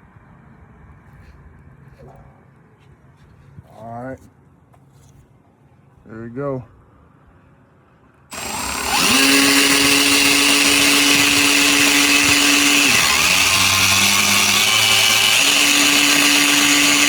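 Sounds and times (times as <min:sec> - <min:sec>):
cordless ratchet motor whining: 0:08.3 - 0:17.0
fuel churning and splashing: 0:08.3 - 0:17.0.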